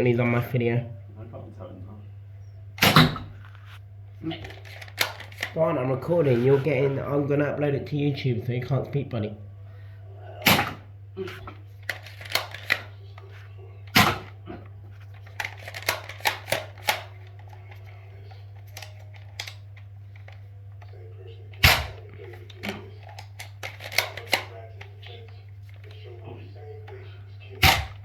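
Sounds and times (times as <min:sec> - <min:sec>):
steady low hum: 0:00.0 - 0:28.0
toy blaster plastic clicks: 0:11.8 - 0:12.9, 0:15.4 - 0:17.1, 0:22.6 - 0:24.6.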